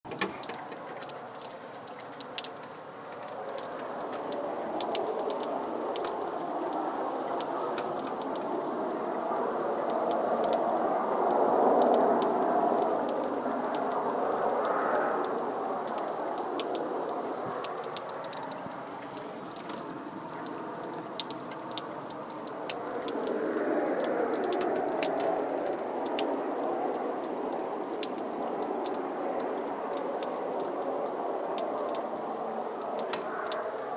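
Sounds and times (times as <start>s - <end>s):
rushing roar from the sky: 0.0s - 33.9s
faint crackling ticks: 0.1s - 8.4s, 12.8s - 29.0s, 32.8s - 33.7s.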